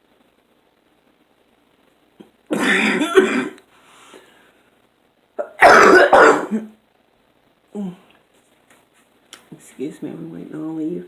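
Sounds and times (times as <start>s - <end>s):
person coughing: 2.2s - 3.6s, 5.4s - 6.7s.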